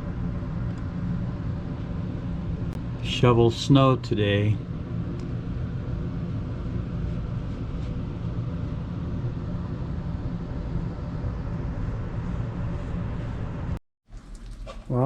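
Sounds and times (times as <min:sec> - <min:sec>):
faint hum: 0:00.0 - 0:15.0
low mechanical rumble: 0:00.0 - 0:15.0.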